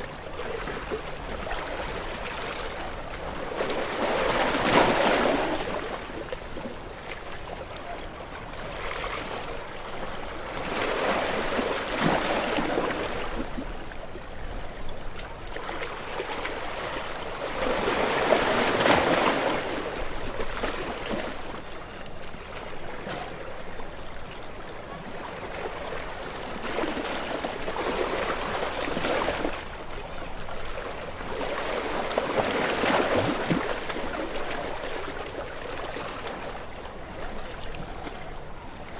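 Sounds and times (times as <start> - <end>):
sea waves breaking on rocks: 0.5 - 7.2, 10.3 - 13.8, 15.4 - 21.7, 25.6 - 38.2.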